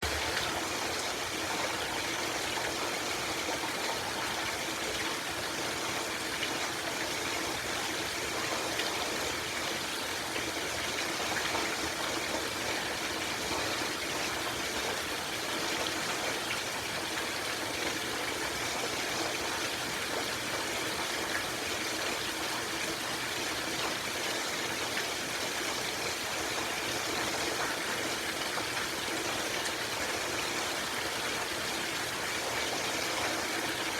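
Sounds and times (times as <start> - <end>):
heavy rain: 0.0 - 1.4.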